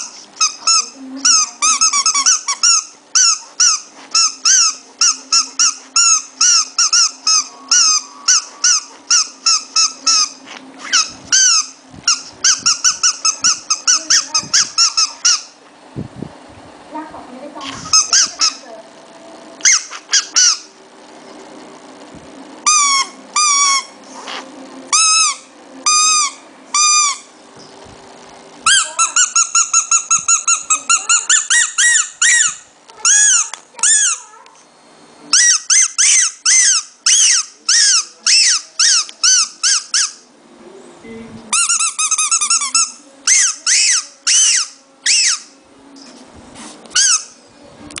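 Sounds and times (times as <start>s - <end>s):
puppy squeaking: 0.0s - 15.6s, 17.6s - 18.7s, 19.6s - 20.7s, 22.6s - 27.3s, 28.6s - 34.6s, 35.3s - 40.3s, 41.5s - 45.5s, 46.9s - 47.4s.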